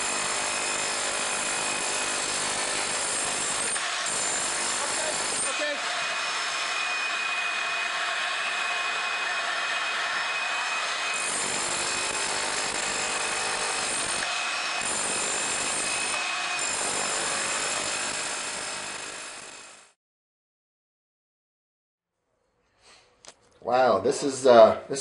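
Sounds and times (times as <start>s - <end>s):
concrete removal power tool: 0.0s - 20.0s.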